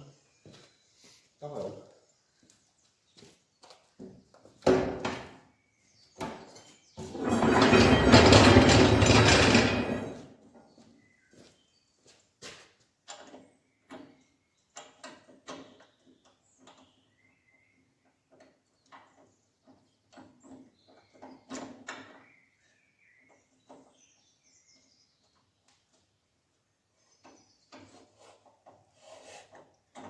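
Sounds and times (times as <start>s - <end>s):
hand tools and metal parts clicking: 7.0s - 10.3s.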